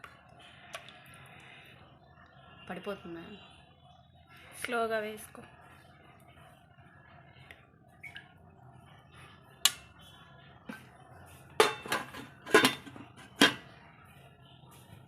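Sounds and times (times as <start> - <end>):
utensils and dishes clinking: 11.6 - 13.7.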